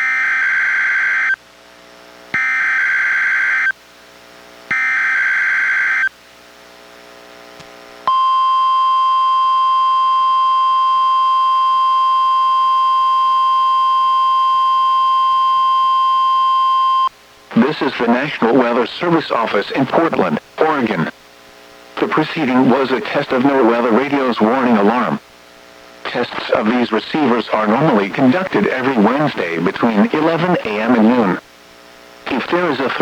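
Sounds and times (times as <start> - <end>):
steady warning alarm tone: 0.0 - 1.4, 2.4 - 3.8, 4.7 - 6.1.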